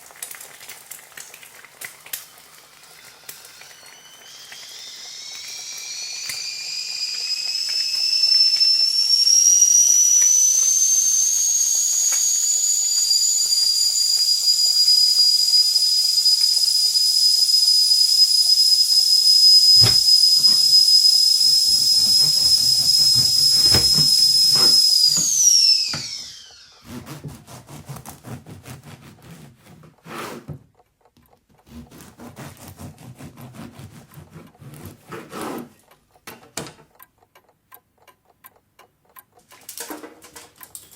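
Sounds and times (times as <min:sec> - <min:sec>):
tea kettle whistling: 0:02.1 - 0:27.2
steam hissing: 0:02.4 - 0:26.5.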